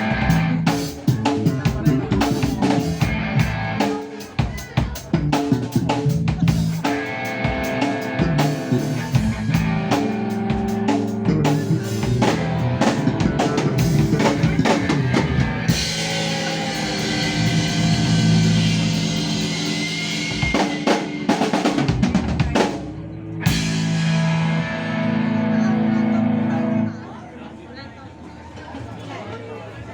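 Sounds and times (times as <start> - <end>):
band playing: 0.0 - 27.0.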